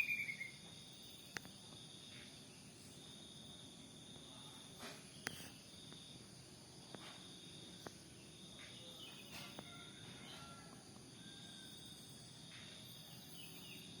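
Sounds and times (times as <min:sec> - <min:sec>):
faint bird chirps: 0:00.0 - 0:03.0, 0:08.2 - 0:14.0
insects chirring: 0:00.0 - 0:14.0.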